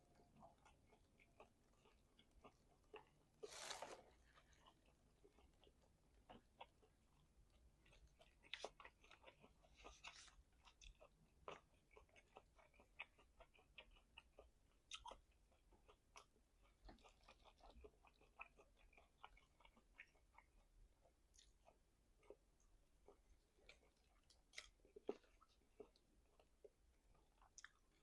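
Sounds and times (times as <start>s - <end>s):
chewing meat mouth clicks: 4.6s - 20.7s.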